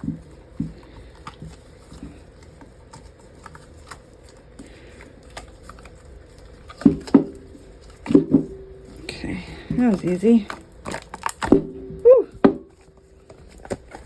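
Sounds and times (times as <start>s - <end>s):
small clicks and crackles: 0.0s - 8.1s.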